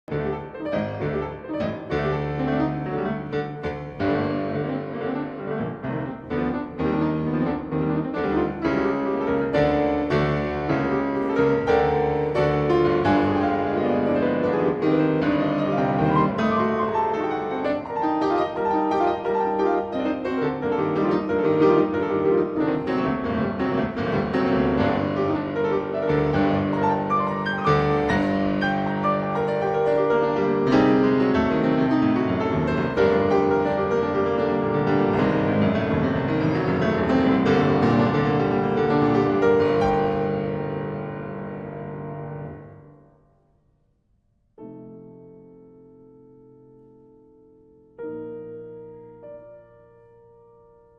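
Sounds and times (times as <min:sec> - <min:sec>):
piano music: 0:00.0 - 0:43.3, 0:44.6 - 0:50.9.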